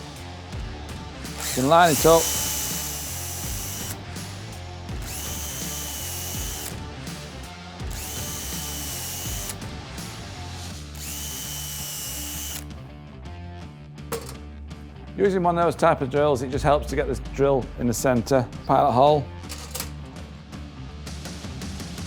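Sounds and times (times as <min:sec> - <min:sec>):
background music: 0:00.0 - 0:22.0
cordless drill whining: 0:01.3 - 0:04.0, 0:04.9 - 0:06.8, 0:07.8 - 0:09.6, 0:10.9 - 0:12.7.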